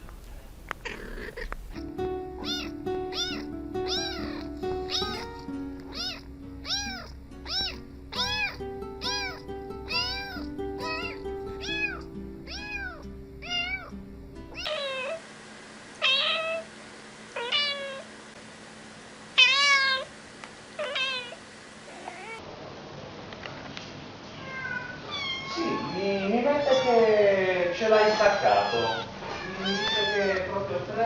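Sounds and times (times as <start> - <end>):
cats meowing: 0.8 - 15.2, 16.0 - 16.7, 17.4 - 18.1, 19.4 - 20.1, 20.8 - 22.4, 24.3 - 30.6
background music: 1.8 - 14.6.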